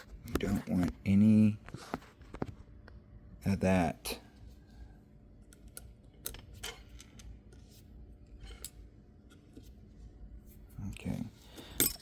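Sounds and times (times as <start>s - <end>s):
small metal parts clicking and tapping: 11.7s - 12.0s.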